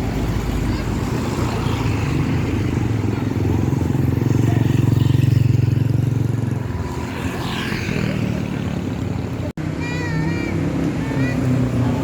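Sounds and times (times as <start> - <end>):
bus diesel engine: 0.0 - 6.9, 7.9 - 12.0
road noise rush: 0.0 - 12.0.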